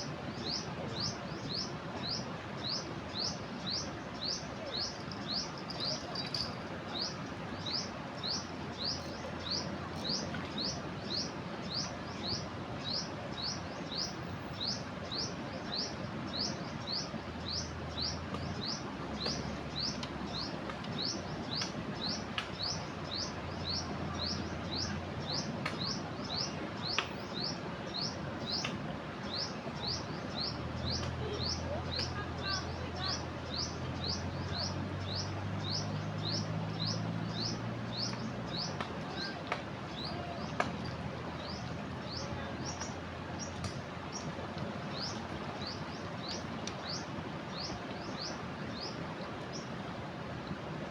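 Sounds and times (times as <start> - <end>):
river rushing: 0.0 - 50.9
bird chirping: 29.3 - 39.3.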